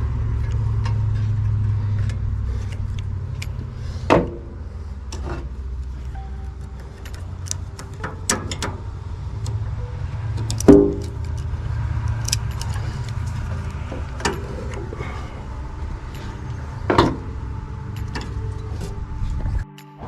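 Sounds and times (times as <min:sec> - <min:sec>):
low hum: 0:00.0 - 0:20.0
metal tools clinking: 0:05.1 - 0:09.6, 0:10.3 - 0:19.0.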